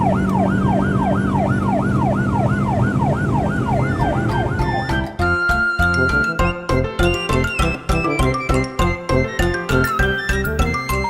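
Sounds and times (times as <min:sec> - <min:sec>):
siren wailing: 0:00.0 - 0:06.6
music with a beat: 0:04.3 - 0:11.0.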